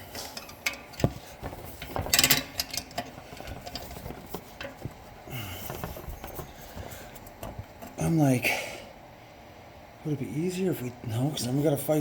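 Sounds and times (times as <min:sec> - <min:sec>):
metal clinking and scraping: 0:00.0 - 0:08.0.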